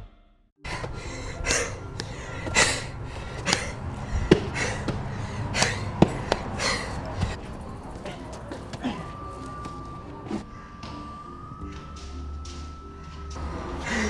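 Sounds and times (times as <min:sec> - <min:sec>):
person breathing heavily: 0:00.6 - 0:09.6, 0:13.8 - 0:14.0.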